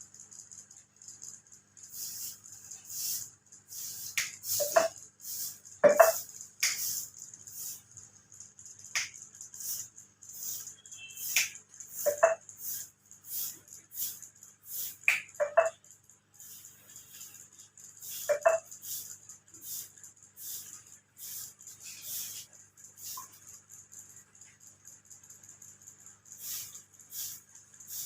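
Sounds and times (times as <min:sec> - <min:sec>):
fingers rubbing through hair: 0:01.9 - 0:07.8, 0:09.0 - 0:15.8, 0:18.0 - 0:23.5.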